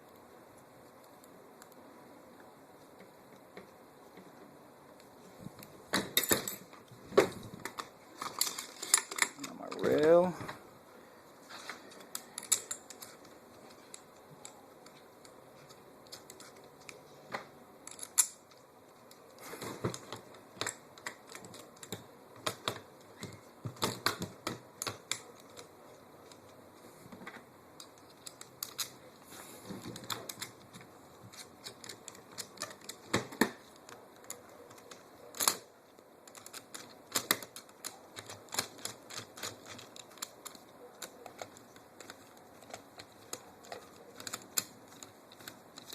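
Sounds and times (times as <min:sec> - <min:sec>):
metal parts clicking and tapping: 0:06.0 - 0:06.9, 0:07.6 - 0:10.1, 0:11.9 - 0:17.0, 0:17.8 - 0:19.2, 0:19.9 - 0:26.5, 0:27.8 - 0:29.0, 0:29.8 - 0:45.9.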